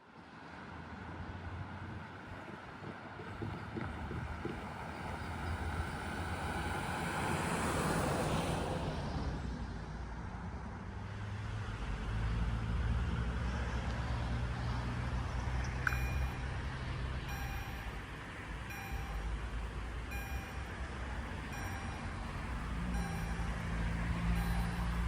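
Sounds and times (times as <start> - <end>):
car passing: 0.7 - 9.6, 10.8 - 25.0
heavy vehicle engine hum: 0.7 - 25.0
level crossing warning bell: 15.8 - 25.0.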